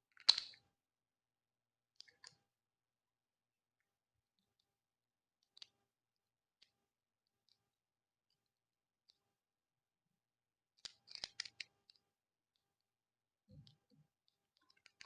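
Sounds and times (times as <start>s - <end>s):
plastic model parts clicking: 0.2s - 0.6s, 10.8s - 12.0s, 14.6s - 15.0s.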